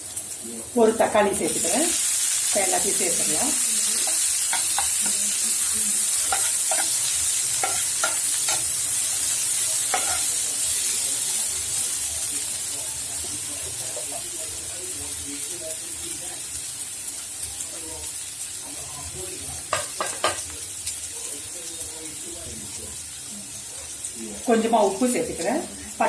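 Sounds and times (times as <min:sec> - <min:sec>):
food sizzling in oil: 0:00.0 - 0:26.0
spatula knocking against pan: 0:04.1 - 0:05.2.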